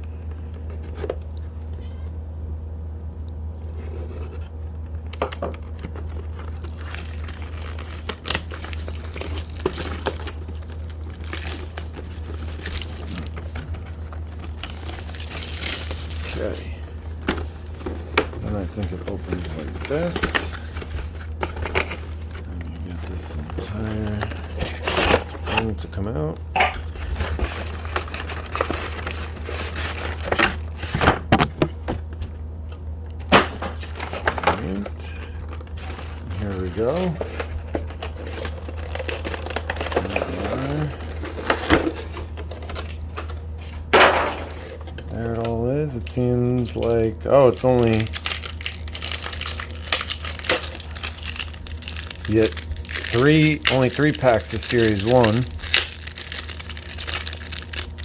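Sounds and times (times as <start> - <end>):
steady low hum: 0.0 - 58.0
packaging crinkling and tearing: 3.6 - 58.0.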